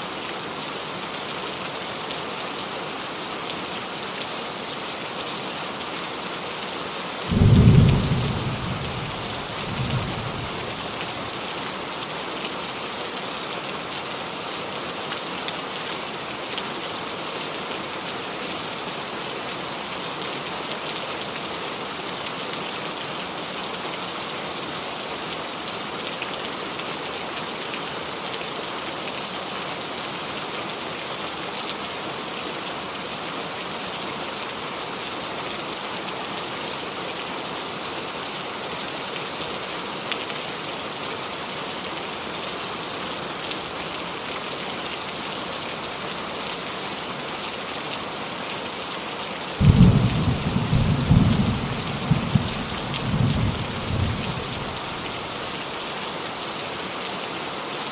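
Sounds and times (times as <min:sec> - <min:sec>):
rain falling on a roof: 0:00.0 - 0:57.9
low rumble of thunder: 0:07.3 - 0:10.9, 0:49.6 - 0:55.0.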